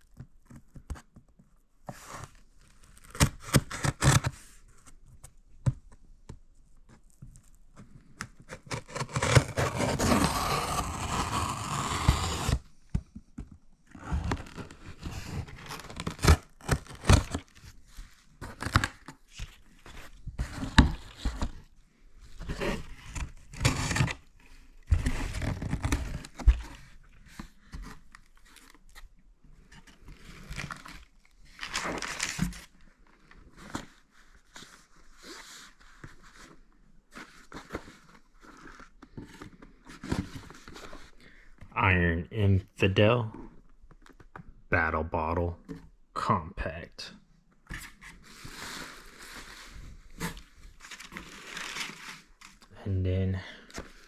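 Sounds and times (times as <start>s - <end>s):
packaging tearing: 2.9s - 4.3s, 8.7s - 12.7s, 14.2s - 17.5s, 31.5s - 32.7s, 50.2s - 52.7s
packaging scraping and crinkling: 8.5s - 12.7s, 13.9s - 21.6s, 24.9s - 26.9s, 29.9s - 36.6s, 47.8s - 52.7s.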